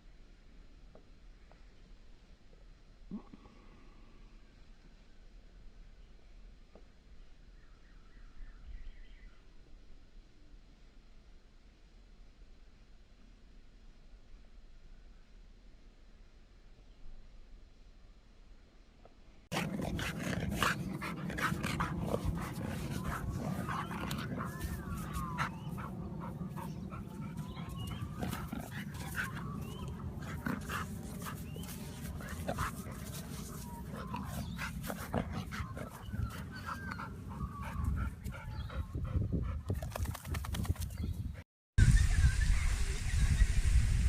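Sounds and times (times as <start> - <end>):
dog whining: 20.0 - 38.0
low rumble: 41.8 - 44.0.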